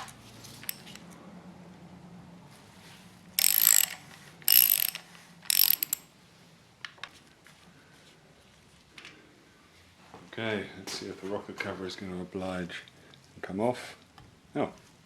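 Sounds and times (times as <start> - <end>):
ratchet wrench clicking: 0.6 - 1.0, 3.4 - 6.1.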